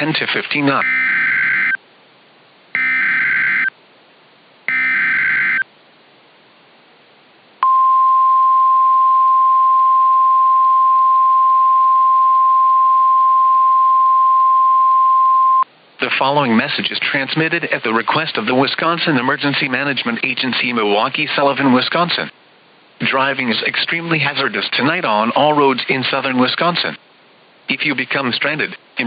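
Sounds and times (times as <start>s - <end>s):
data bursts: 0.8s - 1.8s, 2.8s - 3.7s, 4.7s - 5.6s
steady high alarm tone: 0.8s - 1.8s, 2.8s - 3.7s, 4.7s - 5.6s.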